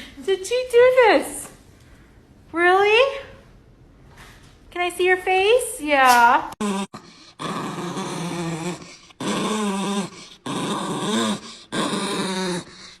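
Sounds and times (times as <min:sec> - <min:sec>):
dog moaning: 0:06.6 - 0:13.0.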